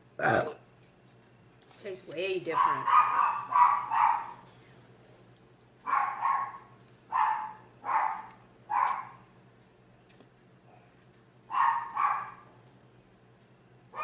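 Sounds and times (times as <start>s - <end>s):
dog barking: 2.5s - 4.4s, 5.8s - 9.2s, 11.5s - 12.5s.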